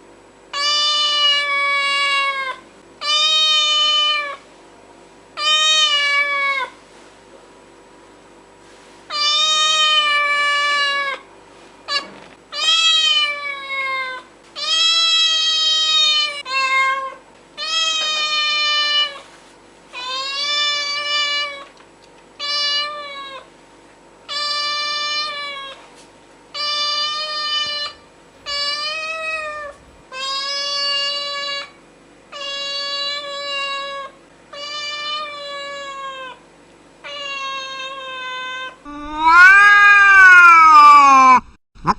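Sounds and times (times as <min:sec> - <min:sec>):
cat meowing: 0:11.9 - 0:19.2, 0:26.6 - 0:31.7, 0:37.0 - 0:41.5.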